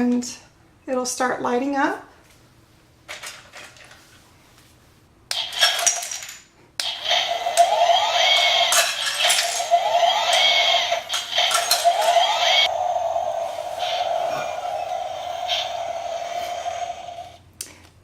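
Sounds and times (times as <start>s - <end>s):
toy excavator whirring and clicking: 6.8s - 12.7s
short rising whines: 6.9s - 17.4s.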